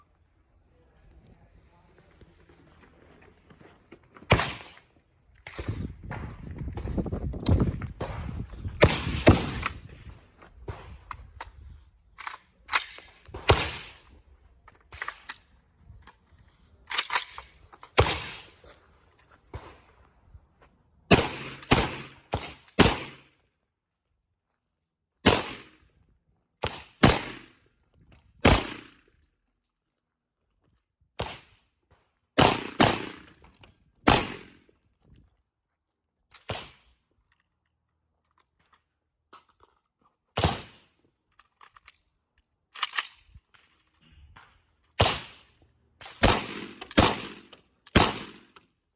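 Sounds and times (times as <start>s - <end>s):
gunshots: 4.3s - 4.8s, 8.0s - 9.9s, 12.7s - 14.0s, 18.0s - 18.5s, 21.1s - 23.2s, 25.2s - 25.7s, 26.6s - 27.5s, 28.4s - 28.9s, 32.4s - 33.3s, 34.1s - 34.6s, 40.4s - 40.8s, 45.0s - 45.4s, 46.0s - 48.5s.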